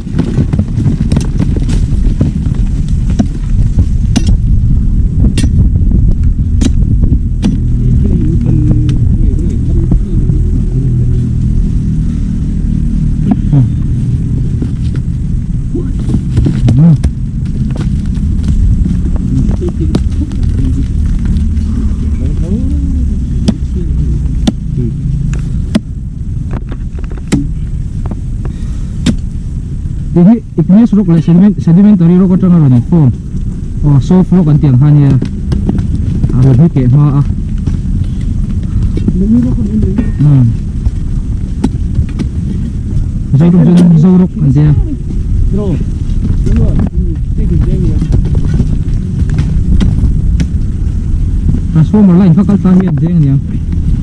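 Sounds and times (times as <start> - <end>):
diesel engine running: 0.0 - 54.0
sharp knocks: 6.5 - 7.7, 23.4 - 23.7, 24.4 - 24.8, 25.7 - 28.2.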